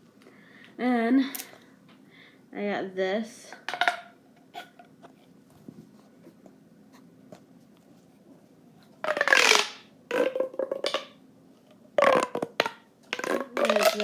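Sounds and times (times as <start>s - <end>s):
fidget toy rubbing and rasping: 9.1s - 11.0s, 12.0s - 14.0s.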